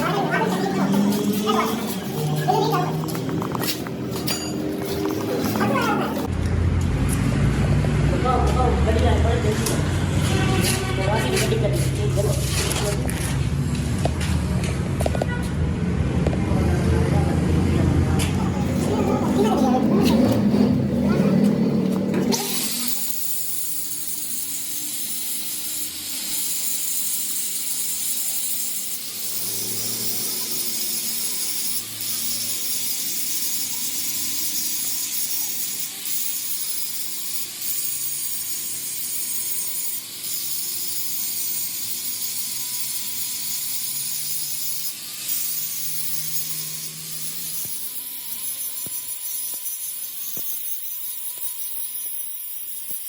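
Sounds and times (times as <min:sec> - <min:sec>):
power tool working metal: 0:00.0 - 0:14.2, 0:16.7 - 0:53.0.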